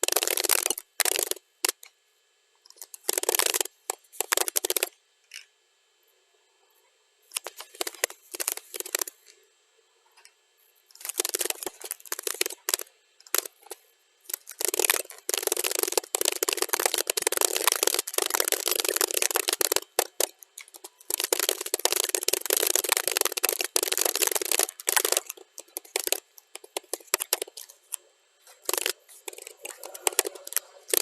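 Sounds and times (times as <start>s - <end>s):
rapid keyboard key clicks: 0.0s - 1.9s, 2.8s - 4.9s, 7.4s - 9.1s, 11.0s - 31.0s.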